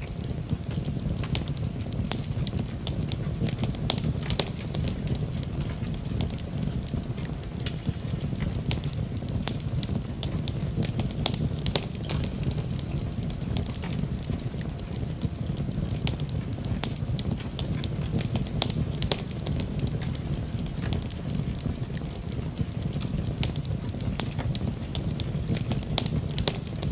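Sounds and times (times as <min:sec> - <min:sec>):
fire crackling and popping: 0:00.0 - 0:26.9
fire flames rumbling: 0:00.0 - 0:26.9.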